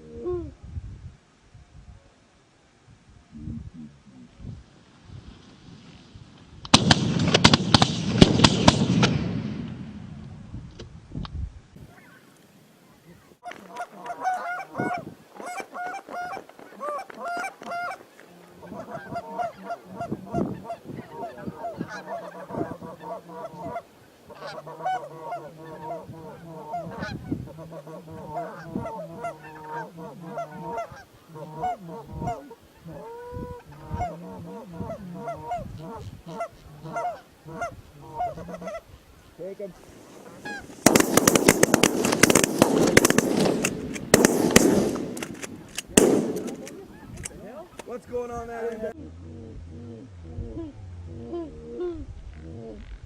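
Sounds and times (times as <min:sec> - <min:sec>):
geese honking: 0:13.4 - 0:39.0, 0:40.0 - 0:47.8.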